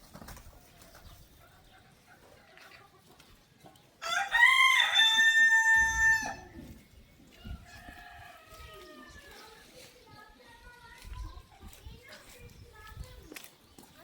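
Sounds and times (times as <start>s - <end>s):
rooster crowing: 4.0s - 6.6s.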